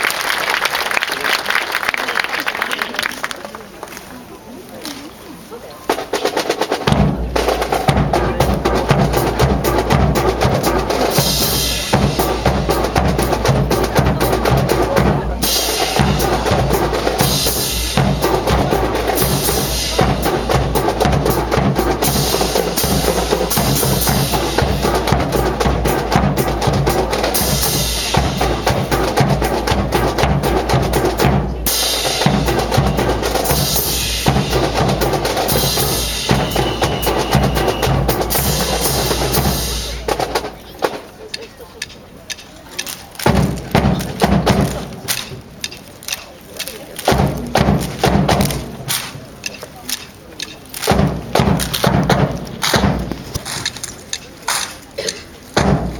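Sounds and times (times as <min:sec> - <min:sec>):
drum corps playing snare and bass: 0:05.8 - 0:55.9.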